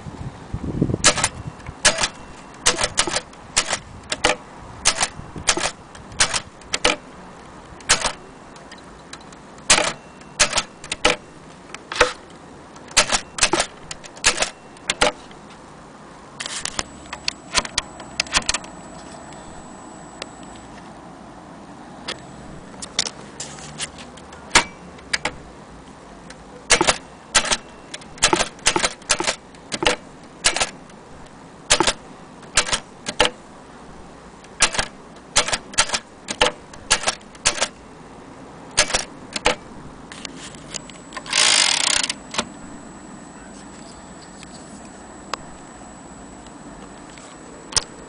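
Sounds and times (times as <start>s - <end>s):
rasping typewriter burst: 1.0s - 7.0s, 7.9s - 8.2s, 9.7s - 11.2s, 12.9s - 15.2s, 26.7s - 30.8s, 31.7s - 33.3s, 34.6s - 37.8s, 38.8s - 39.6s
typewriter keys clacking: 26.7s - 30.8s, 31.7s - 32.0s, 32.6s - 33.3s, 34.6s - 37.7s, 38.8s - 39.6s.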